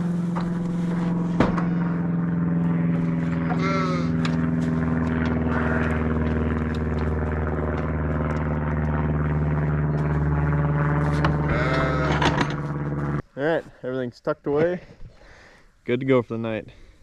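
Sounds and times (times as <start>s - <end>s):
vehicle engine humming: 0.0s - 13.6s.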